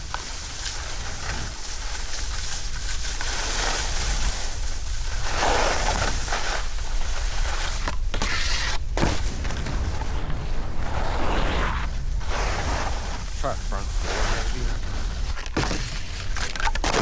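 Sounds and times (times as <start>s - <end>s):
skis sliding over snow: 0.0s - 17.0s
wind buffeting microphone: 9.0s - 15.4s.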